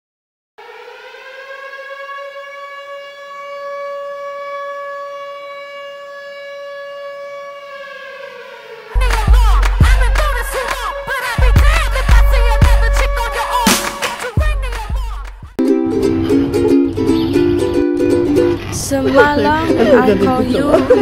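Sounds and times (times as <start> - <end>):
siren wail: 0.6 - 14.5
hip hop music with heavy bass: 9.0 - 16.2.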